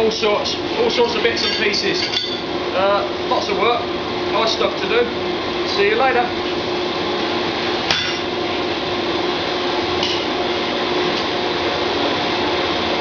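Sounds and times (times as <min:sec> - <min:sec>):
workshop machinery humming: 0:00.0 - 0:13.0.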